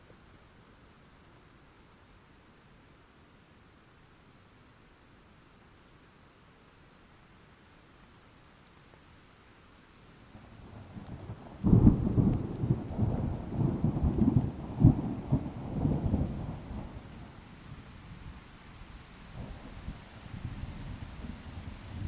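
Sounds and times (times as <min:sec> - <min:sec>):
light rain: 0:00.0 - 0:22.0
thunder crack and rumble: 0:10.6 - 0:17.1.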